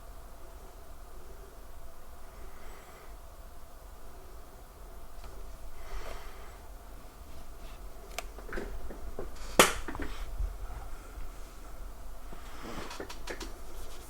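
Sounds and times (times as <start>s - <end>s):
faint steady background noise: 0.0s - 14.0s.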